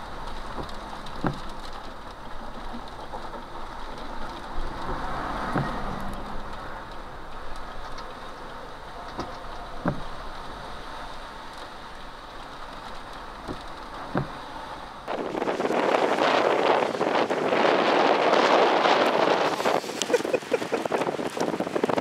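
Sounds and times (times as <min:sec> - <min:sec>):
wind and rain rushing: 0:00.0 - 0:22.0
dull thumps: 0:00.5 - 0:01.6, 0:05.5 - 0:05.9, 0:09.8 - 0:10.1, 0:13.5 - 0:14.5
wind gust on microphone: 0:15.1 - 0:22.0.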